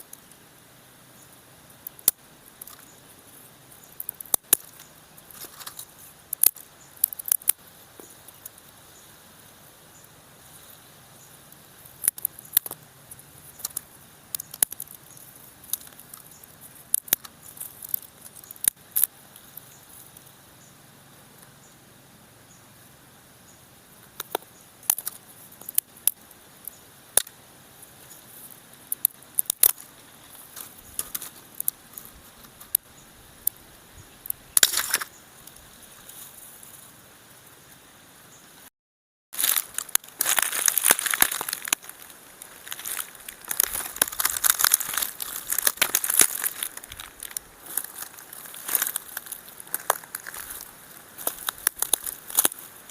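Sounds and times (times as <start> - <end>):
dry twigs snapping: 1.8 - 3.0, 3.8 - 8.6, 11.8 - 19.6, 24.2 - 27.4, 28.9 - 32.8, 34.2 - 36.3, 39.4 - 52.9.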